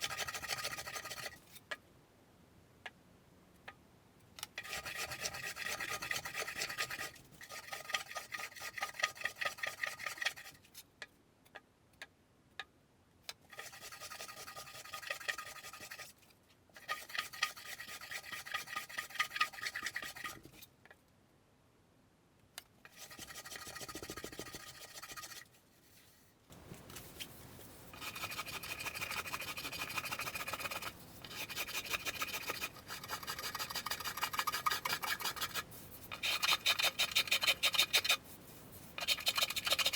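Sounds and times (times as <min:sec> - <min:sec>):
hand rasp scraping wood: 0:04.6 - 0:10.5, 0:16.8 - 0:20.4, 0:28.0 - 0:38.2, 0:39.0 - 0:39.9.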